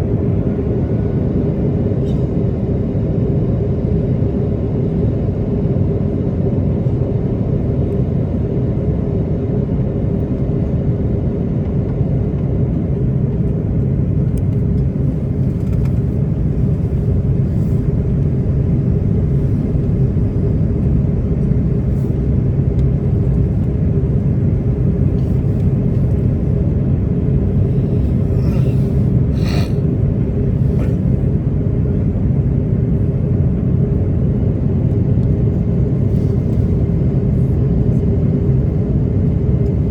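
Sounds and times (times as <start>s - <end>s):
aircraft cabin engine rumble: 0.0s - 39.9s
steady hum: 12.9s - 39.9s.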